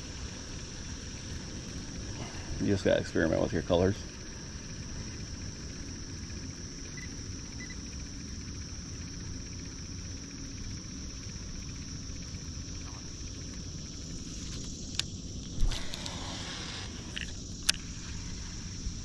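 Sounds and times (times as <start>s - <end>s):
high-pitched insect chorus: 0.0s - 19.0s
sharp click: 17.1s - 17.8s.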